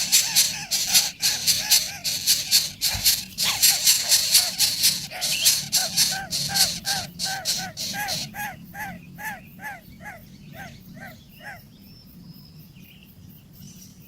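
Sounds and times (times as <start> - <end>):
dry rattling hiss: 0.0 - 8.6
young bird calling: 0.0 - 11.6.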